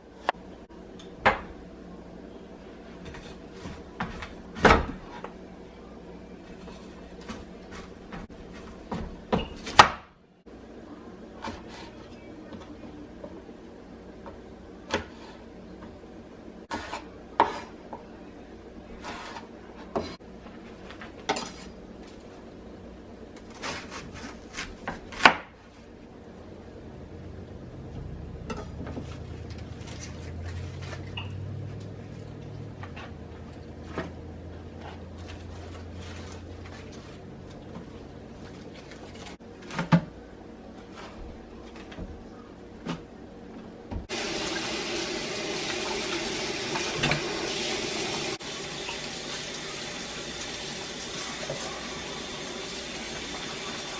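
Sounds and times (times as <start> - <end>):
low steady rumble: 25.8 - 39.4.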